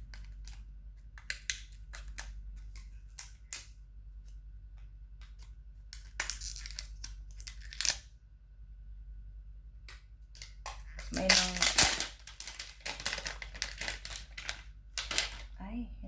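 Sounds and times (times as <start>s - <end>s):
packaging rustling: 5.9s - 8.1s, 10.3s - 15.6s.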